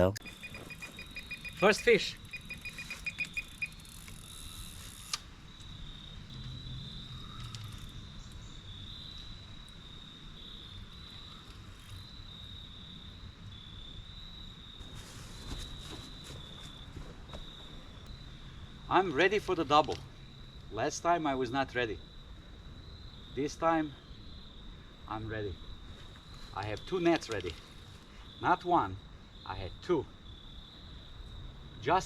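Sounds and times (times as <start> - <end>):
bite alarm beeping: 0.0 - 4.0
crickets chirring: 0.0 - 32.0.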